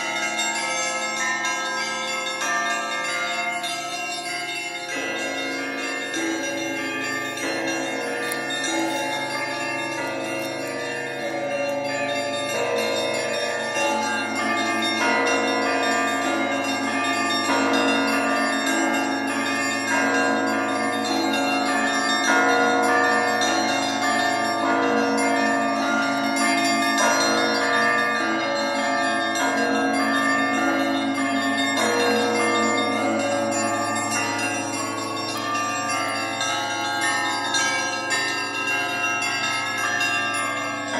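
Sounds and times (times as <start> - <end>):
church bells pealing: 0.0 - 40.9.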